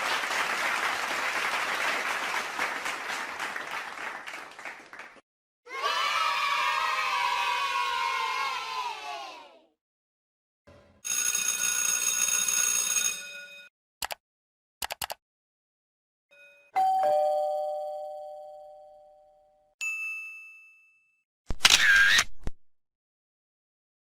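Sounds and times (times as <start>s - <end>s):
quick clicks: 14.8s - 15.2s
two-note ding-dong chime: 16.4s - 21.0s
short high ding: 19.8s - 21.2s.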